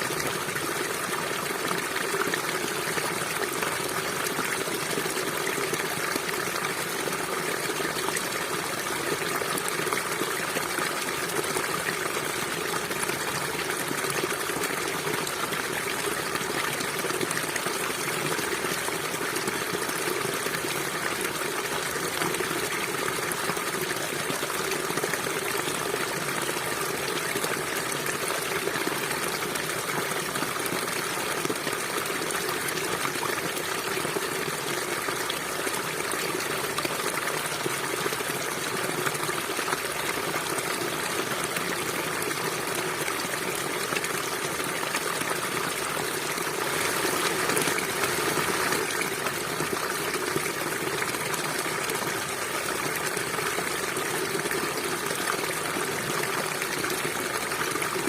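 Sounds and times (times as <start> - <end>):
river water flowing over rocks: 0.0 - 58.0.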